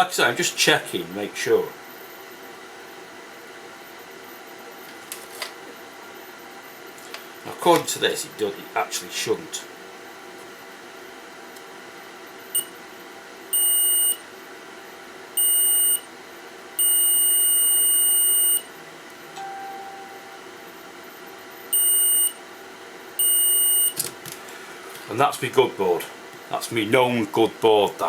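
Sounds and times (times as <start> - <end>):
multimeter continuity beeps: 12.5 - 12.8, 13.5 - 14.2, 15.4 - 16.1, 16.8 - 18.7, 21.6 - 22.4, 23.2 - 24.0.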